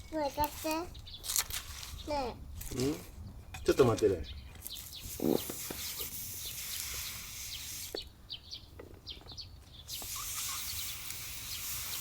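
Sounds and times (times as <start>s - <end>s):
bird chirps: 3.4s - 12.0s
air blowing hiss: 9.9s - 12.0s.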